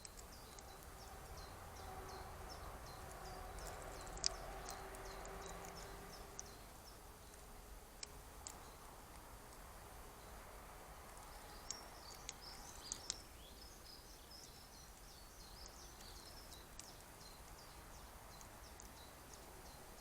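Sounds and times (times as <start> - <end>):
sharp ticks: 0.0 - 6.7, 11.1 - 13.3
faint steady background: 0.0 - 20.0
small birds chirping: 0.0 - 20.0.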